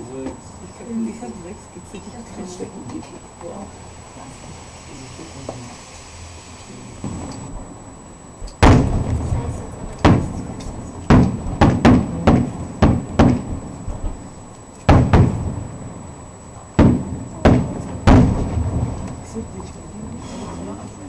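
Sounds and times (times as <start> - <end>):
firework shells bursting: 8.4 - 14.2, 14.8 - 16.0, 16.8 - 19.2.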